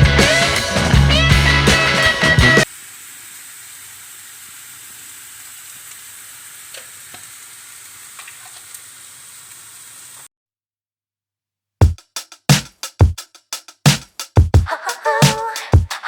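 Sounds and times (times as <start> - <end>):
food sizzling in a frying pan: 2.6 - 10.3.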